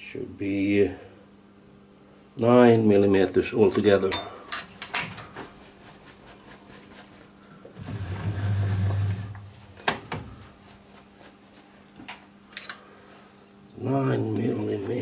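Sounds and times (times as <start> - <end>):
small metal parts clicking: 12.5 - 12.8.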